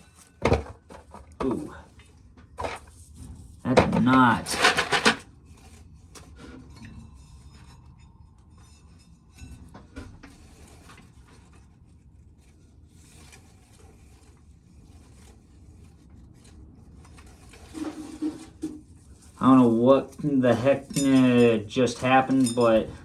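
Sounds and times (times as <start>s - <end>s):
corn kernels rasping on cob: 10.2s - 22.9s.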